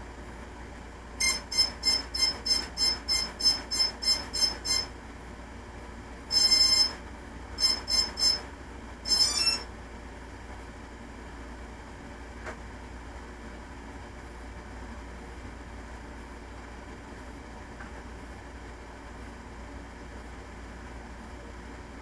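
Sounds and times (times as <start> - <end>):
long electronic beep: 1.2 - 4.9, 6.3 - 7.0, 7.6 - 8.5, 9.1 - 9.7
short high electronic beeps: 1.2 - 4.9, 6.3 - 7.0, 7.6 - 8.5, 9.1 - 9.7.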